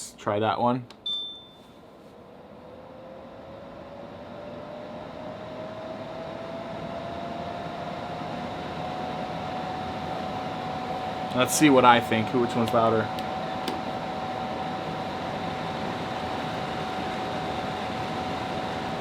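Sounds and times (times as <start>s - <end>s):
air purifier fan rushing: 1.8s - 19.0s
fan whine rising in pitch: 2.0s - 19.0s.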